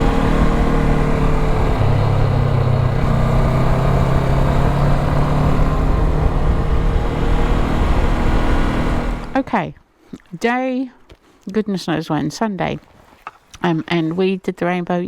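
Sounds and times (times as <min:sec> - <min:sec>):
motorcycle engine rumbling: 0:00.0 - 0:09.5.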